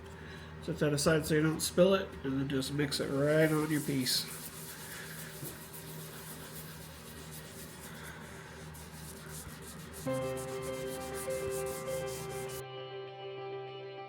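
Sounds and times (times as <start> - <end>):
pad rubbing wood: 3.4 - 12.6
background music: 10.1 - 14.0.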